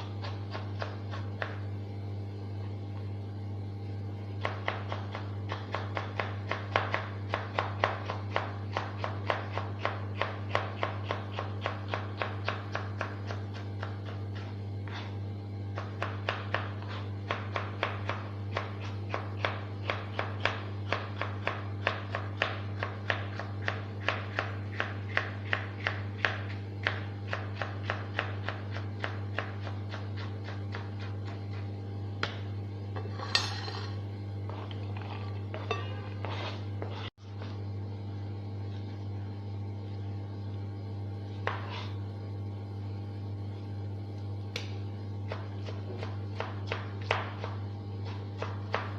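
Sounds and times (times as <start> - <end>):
low electrical hum: 0.0 - 48.9
knife chopping on cutting board: 0.1 - 1.7, 4.4 - 33.9, 41.4 - 42.0, 44.5 - 48.9.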